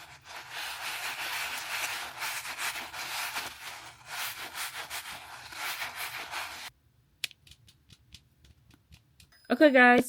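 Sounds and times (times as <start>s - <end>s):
hands rustling toy packaging: 0.0s - 6.7s.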